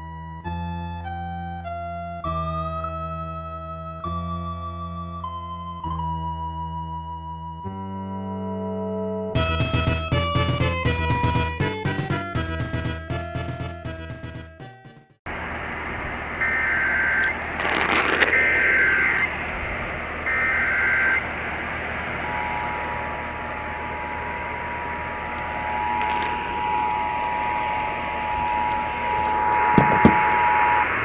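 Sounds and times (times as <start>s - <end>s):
radio static: 15.4s - 31.0s
data header bursts: 16.4s - 19.3s.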